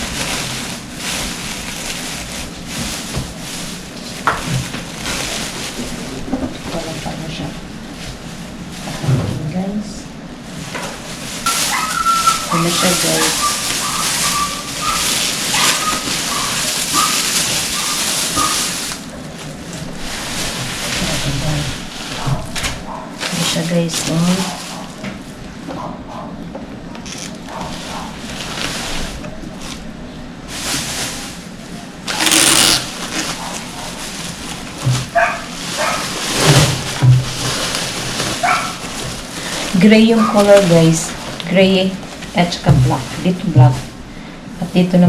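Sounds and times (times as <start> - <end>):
packaging rustling and crinkling: 0.0 - 9.5, 10.4 - 25.5, 27.0 - 44.0
small dog yipping: 11.5 - 18.6, 35.2 - 36.0, 38.4 - 38.8.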